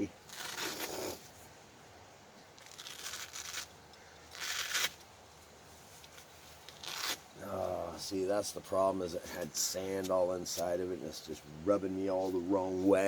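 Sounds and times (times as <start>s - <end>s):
velcro straps tearing open: 0.2s - 1.2s, 2.6s - 3.7s, 4.3s - 5.0s, 6.6s - 7.2s.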